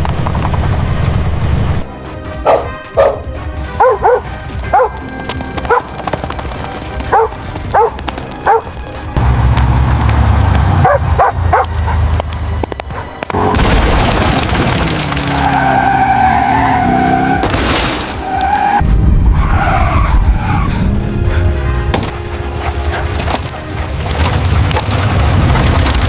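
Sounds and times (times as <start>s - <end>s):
dog barking: 2.4s - 5.0s, 7.1s - 8.7s, 10.8s - 12.0s
car tyres screeching: 15.0s - 20.9s
dramatic film score: 15.0s - 26.0s.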